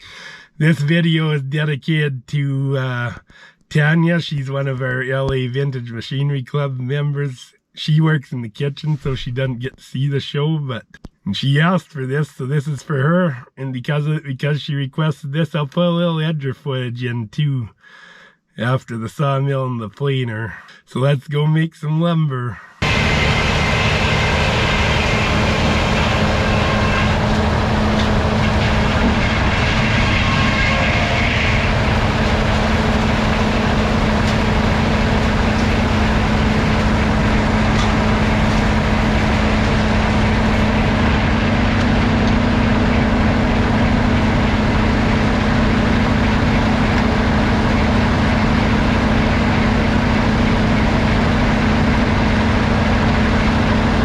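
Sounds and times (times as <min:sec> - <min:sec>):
constant machine hum: 0:22.8 - 0:54.0
sawmill machinery rumbling: 0:22.8 - 0:54.0.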